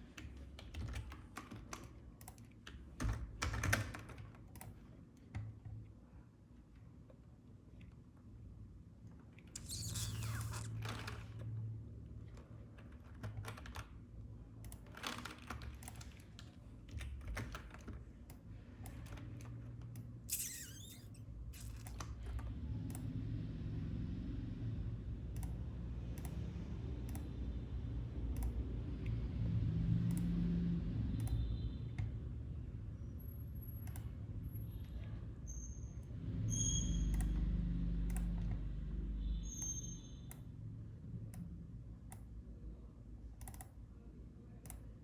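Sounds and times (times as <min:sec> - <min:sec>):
keyboard keys clicking: 0:00.0 - 0:05.6.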